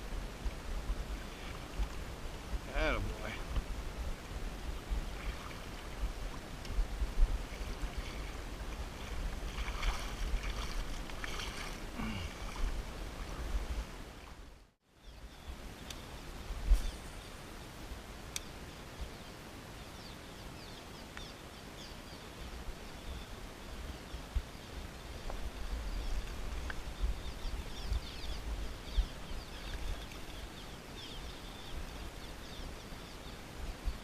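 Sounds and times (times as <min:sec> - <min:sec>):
creek hiss: 0:00.0 - 0:14.4, 0:15.2 - 0:34.0
small birds chirping: 0:15.0 - 0:17.4, 0:18.3 - 0:34.0.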